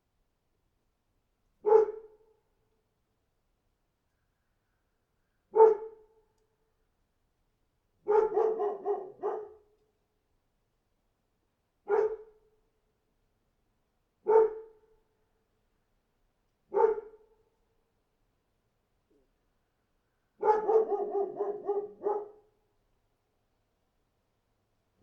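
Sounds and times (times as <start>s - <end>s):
dog barking: 1.6s - 2.2s, 5.5s - 6.1s, 8.0s - 9.7s, 11.9s - 12.4s, 14.2s - 14.8s, 16.7s - 17.2s, 20.4s - 22.5s.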